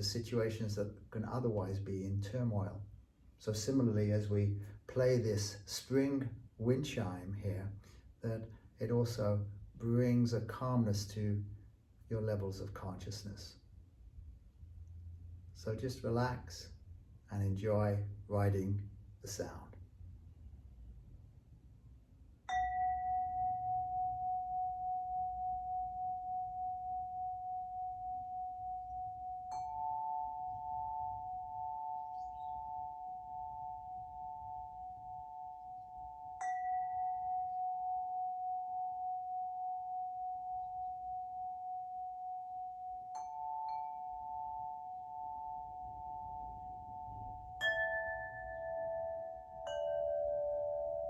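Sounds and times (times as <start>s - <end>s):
wind chime ringing notes: 22.5s - 51.0s.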